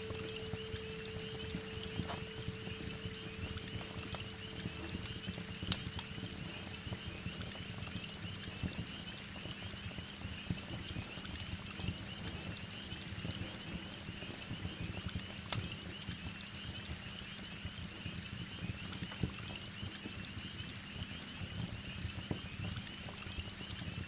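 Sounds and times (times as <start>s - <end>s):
heavy rain hiss: 0.0s - 7.8s
wood fire crackling: 0.0s - 9.8s.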